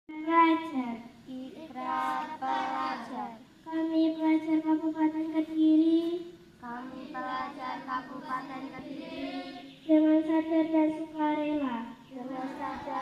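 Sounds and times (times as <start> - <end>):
children chanting in unison: 1.6 - 3.4, 6.6 - 10.7, 11.9 - 13.0.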